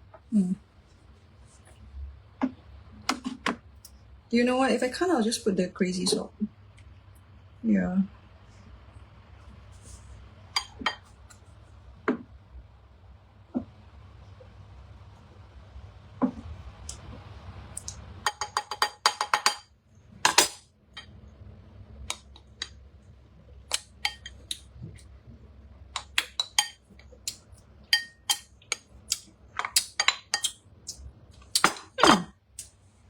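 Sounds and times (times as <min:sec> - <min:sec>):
scrape: 0:09.7 - 0:10.2
kitchen utensils clinking: 0:26.0 - 0:26.8, 0:27.9 - 0:28.5.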